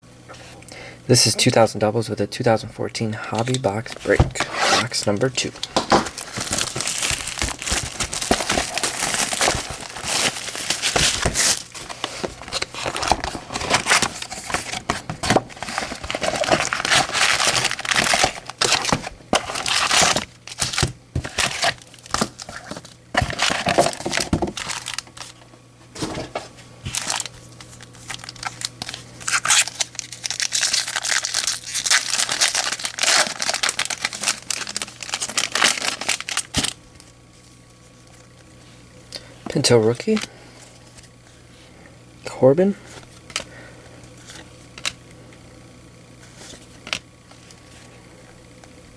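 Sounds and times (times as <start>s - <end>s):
wrapping crinkling and tearing: 3.3s - 25.4s, 26.4s - 38.6s, 39.5s - 41.2s.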